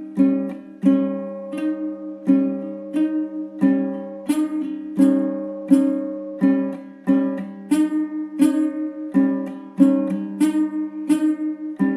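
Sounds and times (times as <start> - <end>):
strummed string chords: 0.0 - 11.9.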